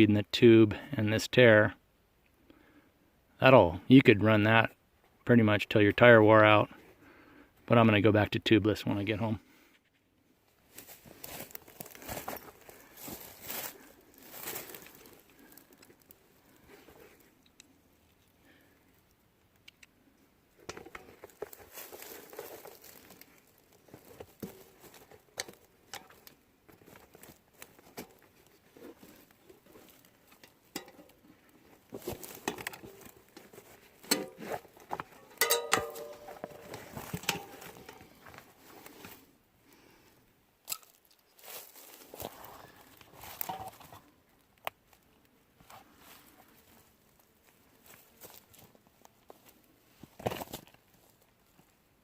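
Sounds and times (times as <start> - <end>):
crinkling rustles: 10.7 - 18.2, 20.6 - 39.3, 40.9 - 44.2
clicks and knocks on bike wheel: 34.1 - 38.0.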